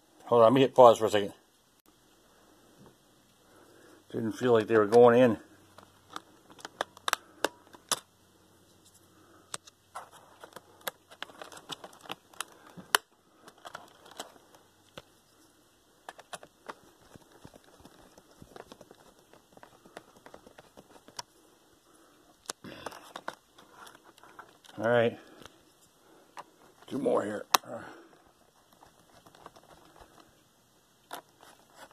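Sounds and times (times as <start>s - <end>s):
plastic laptop parts clicking: 5.7s - 8.1s, 9.5s - 15.1s, 16.0s - 21.3s, 22.4s - 24.8s, 27.5s - 30.3s, 31.1s - 31.9s.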